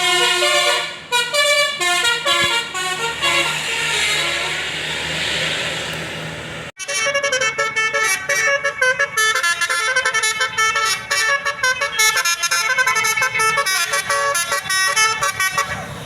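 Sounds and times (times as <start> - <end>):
air horns playing a melody: 0.0 - 5.0, 6.8 - 16.0.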